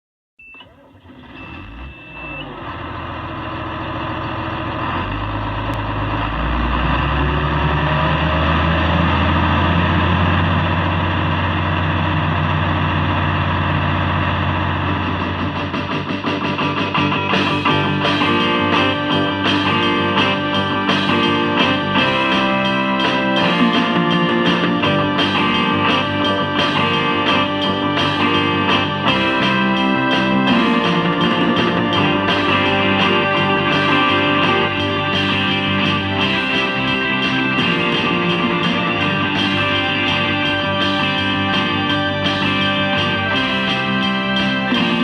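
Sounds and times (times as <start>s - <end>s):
rhythmic strummed guitar: 14.8s - 45.0s.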